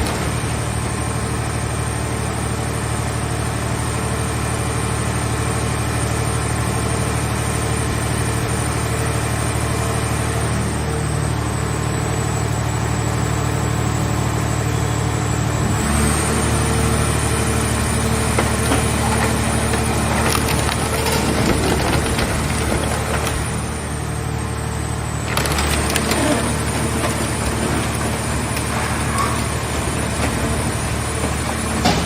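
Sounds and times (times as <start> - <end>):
baler engine running: 0.0 - 32.0
clicks and knocks: 25.3 - 32.0.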